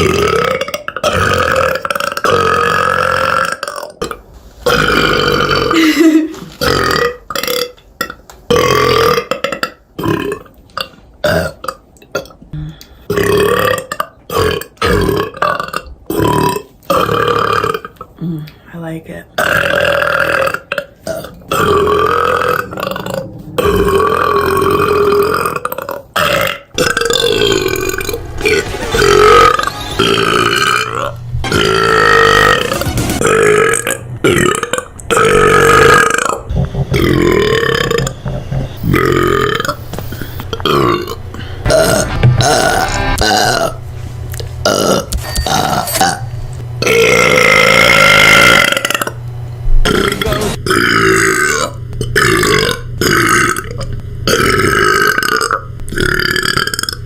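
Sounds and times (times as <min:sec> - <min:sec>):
woman burping: 0:00.0 - 0:10.5, 0:33.2 - 0:41.9.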